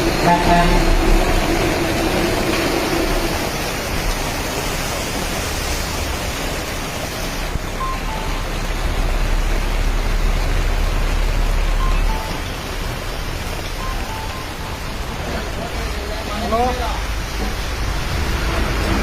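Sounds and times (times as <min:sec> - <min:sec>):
rain falling: 0:00.0 - 0:19.0
brief high tones: 0:07.7 - 0:09.1.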